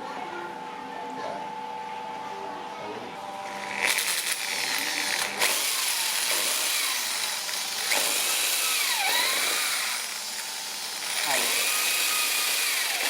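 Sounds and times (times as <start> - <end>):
power tool running on wood: 3.2 - 13.0.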